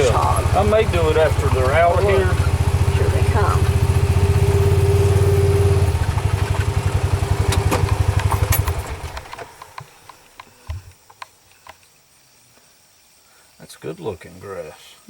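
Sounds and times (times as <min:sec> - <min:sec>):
vehicle engine idling: 0:00.0 - 0:10.9.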